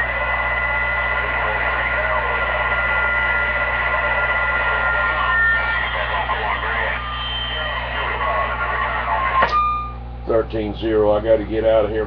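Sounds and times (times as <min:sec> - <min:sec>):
radio static hiss: 0:00.0 - 0:12.0
whistling tones: 0:04.0 - 0:10.0.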